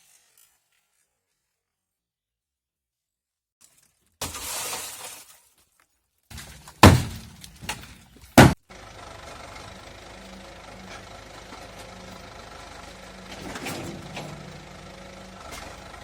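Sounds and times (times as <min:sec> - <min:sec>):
car engine idling: 0:08.6 - 0:16.0.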